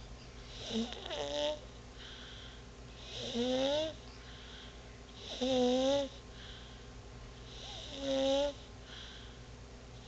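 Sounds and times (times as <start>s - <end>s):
baby snoring: 0.6s - 1.6s, 3.1s - 4.0s, 5.2s - 6.2s, 7.6s - 8.7s.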